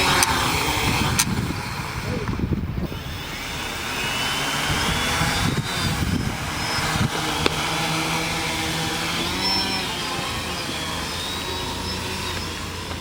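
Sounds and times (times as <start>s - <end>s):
sharp clicks: 0.0s - 1.5s
drone motors whirring: 0.0s - 13.0s.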